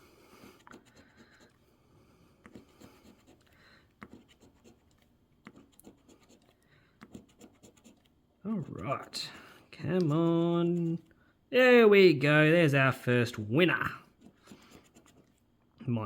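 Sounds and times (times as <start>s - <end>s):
coin scratching a scratch card: 0.4s - 1.6s, 2.4s - 8.1s, 14.2s - 15.4s.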